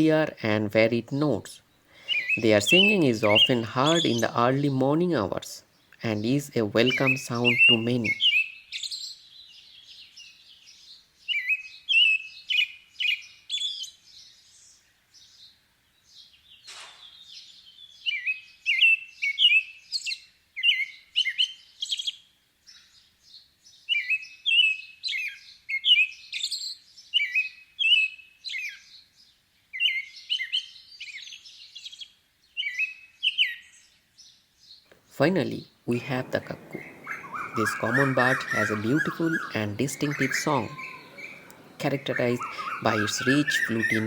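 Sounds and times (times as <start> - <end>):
robin singing: 0.0 - 9.9, 34.9 - 44.0.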